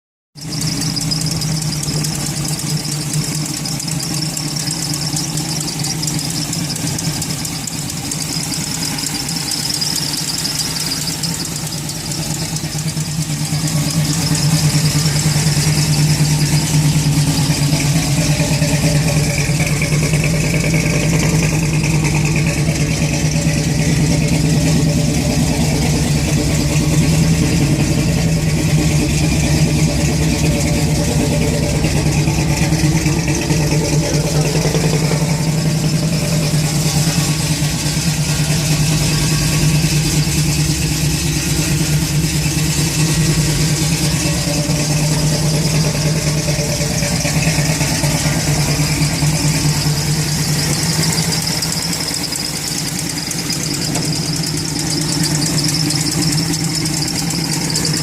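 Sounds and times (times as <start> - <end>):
car engine idling: 0.3 - 58.0.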